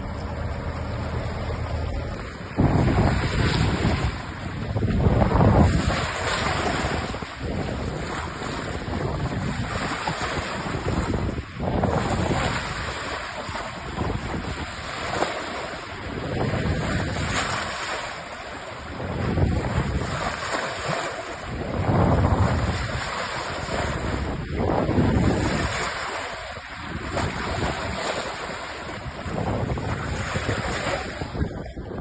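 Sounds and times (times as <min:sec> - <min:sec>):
sea washing: 0:00.0 - 0:32.0
wind buffeting microphone: 0:00.0 - 0:32.0.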